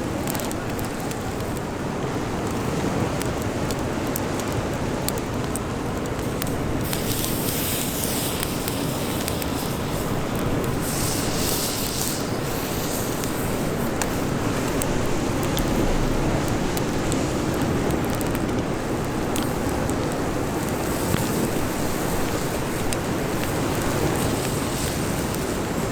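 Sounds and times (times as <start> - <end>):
campfire crackling: 0.0 - 25.9
wind: 0.0 - 25.9
bright hiss: 6.3 - 15.8.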